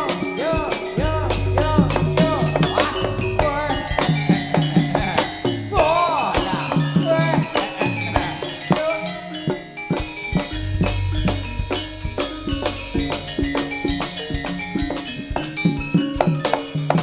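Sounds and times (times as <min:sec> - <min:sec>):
ringing gong-chime tones: 0:00.0 - 0:05.8, 0:08.1 - 0:16.4
drums beating fast rhythm: 0:00.0 - 0:17.0
deep low tone: 0:01.0 - 0:03.7, 0:10.5 - 0:14.0.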